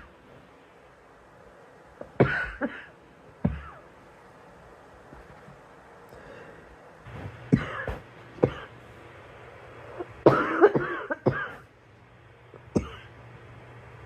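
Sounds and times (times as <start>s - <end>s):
girl coughing: 2.2s - 2.9s, 7.6s - 8.8s, 10.3s - 11.6s, 12.7s - 13.1s.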